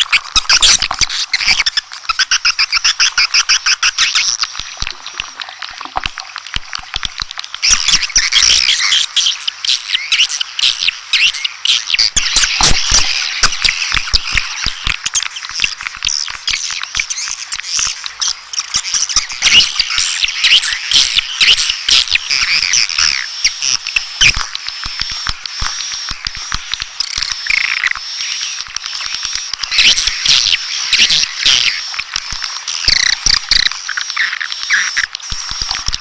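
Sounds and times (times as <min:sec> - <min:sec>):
swiftlets twittering: 0:19.4 - 0:36.0
sharp clicks: 0:24.2 - 0:36.0.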